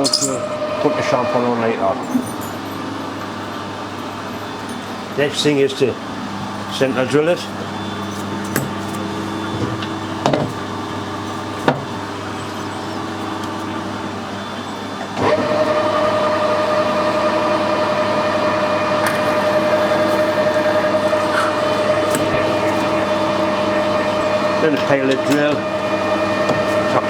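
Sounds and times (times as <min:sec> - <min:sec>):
high whine: 0:00.0 - 0:03.8, 0:15.8 - 0:27.0
metal lathe running: 0:00.0 - 0:07.8, 0:15.1 - 0:27.0.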